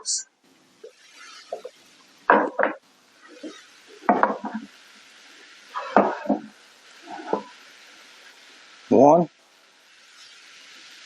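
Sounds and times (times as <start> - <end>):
wooden boards knocking and scraping: 1.5 - 2.8, 3.4 - 4.7, 5.8 - 6.5, 7.1 - 7.6.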